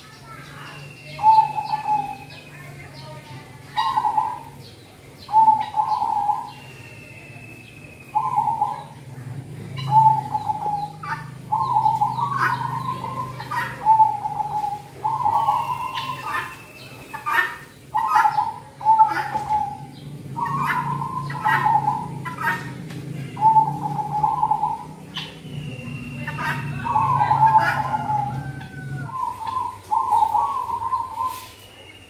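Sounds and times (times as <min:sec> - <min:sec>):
dove cooing: 0:01.0 - 0:02.6, 0:03.6 - 0:06.7, 0:08.0 - 0:31.6.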